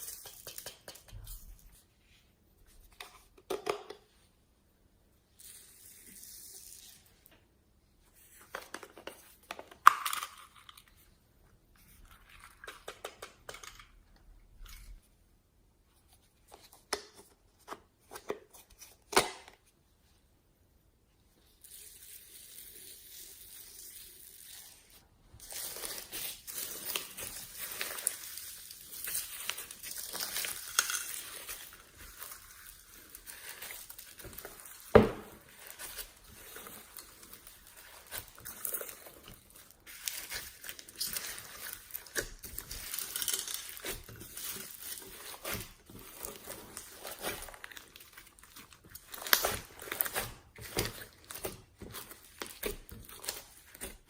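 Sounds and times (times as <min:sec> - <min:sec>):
slime squishing: 0:22.0 - 0:54.0.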